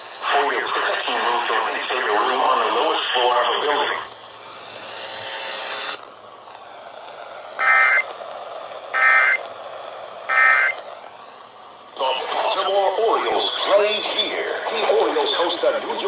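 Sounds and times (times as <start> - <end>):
steady radio hiss: 0.0 - 16.0
warbling digital data tones: 3.2 - 6.0, 7.6 - 8.1, 8.9 - 9.4, 10.3 - 10.8.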